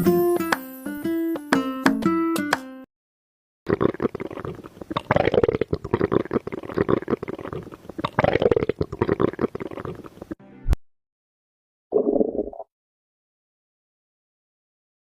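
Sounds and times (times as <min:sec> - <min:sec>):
bowel gurgles and clicks: 0:03.7 - 0:10.4.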